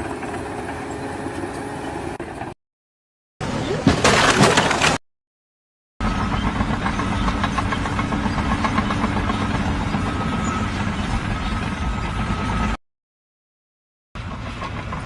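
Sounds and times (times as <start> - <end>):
engine running steadily: 6.0 - 12.8.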